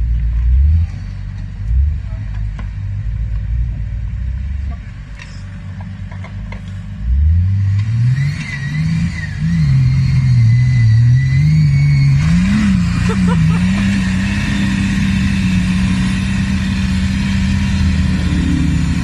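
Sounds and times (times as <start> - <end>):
vehicle engine revving: 0.0 - 19.0
high whine: 7.0 - 19.0.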